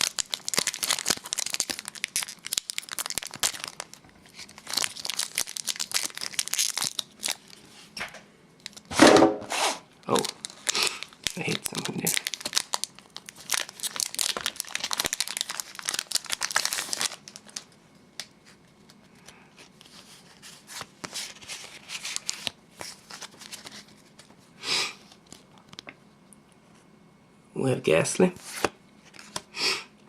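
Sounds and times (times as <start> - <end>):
cards rustling and ticking: 0.0 - 7.6, 10.1 - 24.4
foil wrapper crinkling and tearing: 0.0 - 7.7, 8.6 - 8.9, 10.0 - 24.3.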